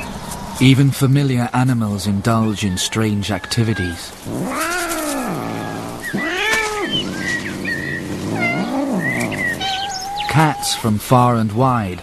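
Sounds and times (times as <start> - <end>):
cat yowling meows: 3.4 - 7.4, 8.3 - 10.6.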